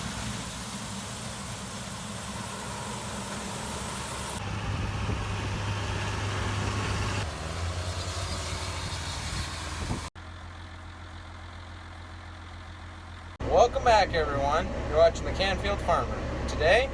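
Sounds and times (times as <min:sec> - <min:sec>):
wide hiss: 0:00.0 - 0:04.4
farm machinery engine running: 0:00.0 - 0:16.9.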